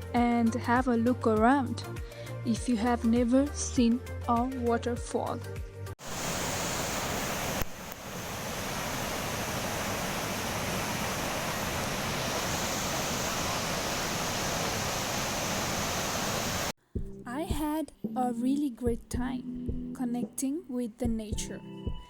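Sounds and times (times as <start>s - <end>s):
waterfall rushing: 6.0s - 16.8s.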